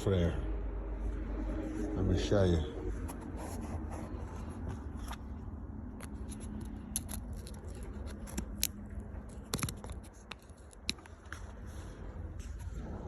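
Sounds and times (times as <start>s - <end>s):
screwdriver scraping and clicking: 5.9s - 11.6s.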